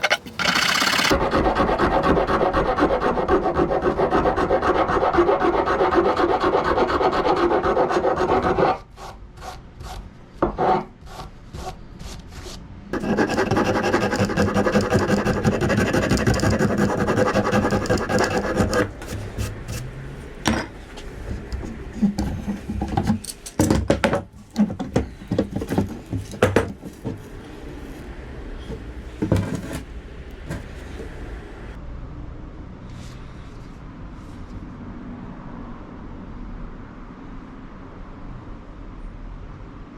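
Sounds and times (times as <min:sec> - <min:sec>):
hand file rasping wood: 0:00.0 - 0:10.0, 0:10.6 - 0:20.1, 0:21.0 - 0:23.2, 0:24.4 - 0:28.0, 0:28.6 - 0:31.2
knocks and scrapes: 0:09.9 - 0:31.7.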